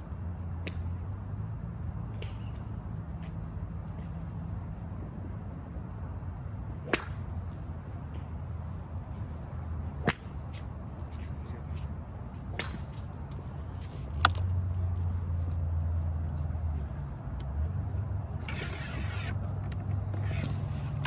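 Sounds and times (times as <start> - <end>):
golf club striking ball: 6.9 - 7.5, 10.0 - 10.6, 12.5 - 13.0.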